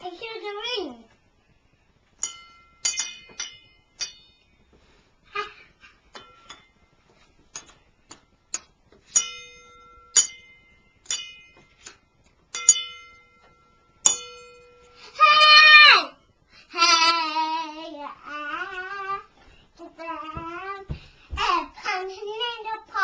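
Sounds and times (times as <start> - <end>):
ringing object being struck: 2.2 - 4.5, 9.1 - 11.9, 12.5 - 15.0.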